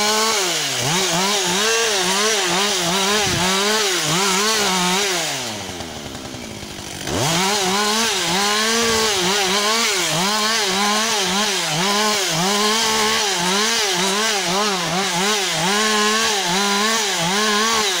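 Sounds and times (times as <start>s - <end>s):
chainsaw cutting wood: 0.0s - 18.0s.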